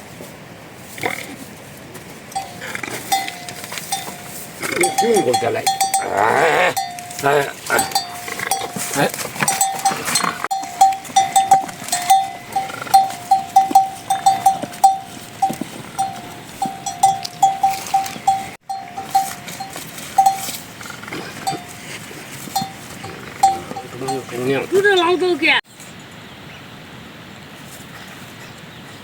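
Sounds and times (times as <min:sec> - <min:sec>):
livestock bell clinking: 0:02.4 - 0:25.4.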